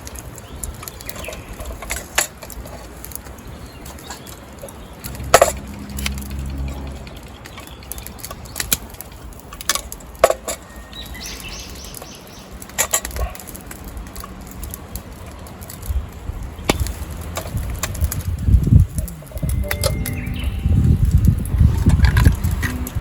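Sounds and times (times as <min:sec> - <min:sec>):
low rumble: 0:04.8 - 0:08.4, 0:18.2 - 0:23.0
bird chirping: 0:19.1 - 0:21.2.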